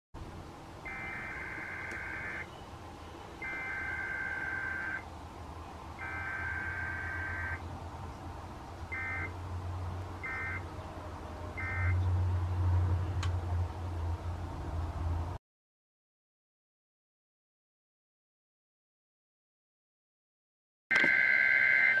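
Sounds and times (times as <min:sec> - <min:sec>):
digital data bursts: 0:00.9 - 0:02.5, 0:03.4 - 0:05.0.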